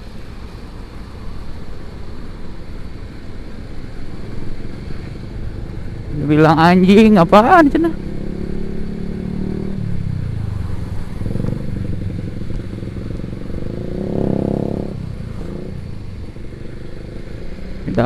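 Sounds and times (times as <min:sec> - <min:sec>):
motorcycle engine revving: 0:07.0 - 0:18.0.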